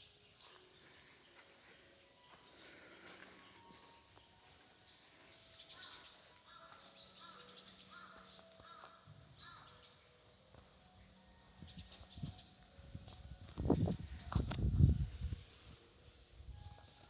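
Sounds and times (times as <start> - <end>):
crow cawing: 5.8 - 9.8.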